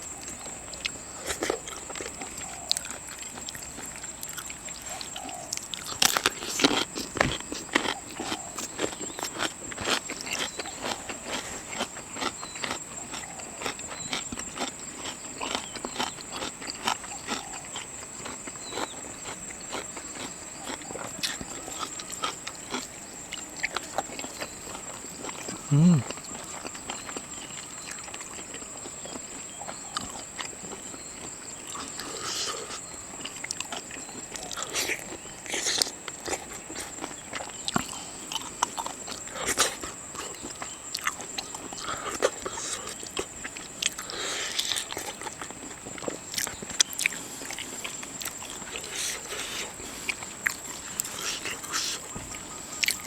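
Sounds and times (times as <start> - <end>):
biting and chewing: 0.0 - 53.0.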